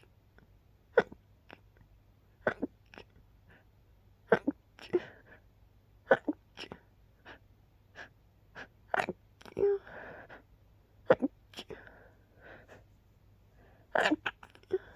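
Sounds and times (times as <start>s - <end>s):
stifled sneezes: 2.4s - 3.1s, 4.3s - 5.2s, 6.1s - 7.4s, 8.0s - 9.8s, 11.1s - 12.0s, 13.9s - 14.9s.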